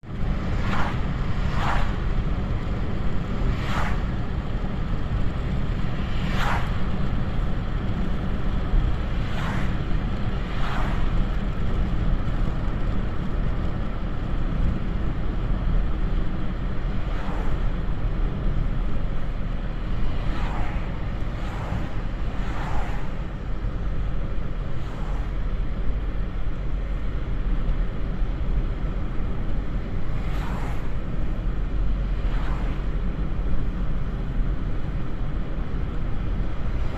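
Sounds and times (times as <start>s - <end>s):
cars whooshing past: 0.0s - 7.4s, 8.8s - 11.8s, 17.0s - 17.9s, 18.5s - 25.5s, 29.8s - 35.1s
low road rumble: 0.0s - 36.9s.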